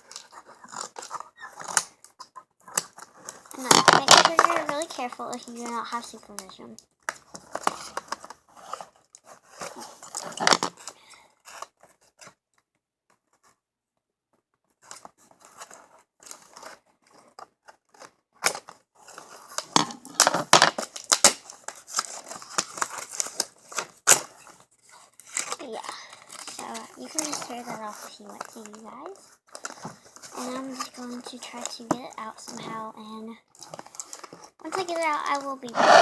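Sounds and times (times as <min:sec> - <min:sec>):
packaging rustling and tearing: 0:00.0 - 0:12.4, 0:14.8 - 0:32.6, 0:33.5 - 0:36.0
scissors cutting packaging: 0:17.8 - 0:31.1.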